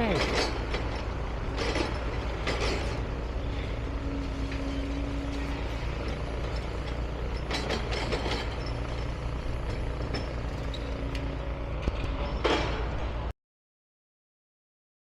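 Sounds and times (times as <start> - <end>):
knocks and clatters: 0.0 - 3.7, 4.4 - 13.3
diesel machinery rumbling: 0.0 - 13.3.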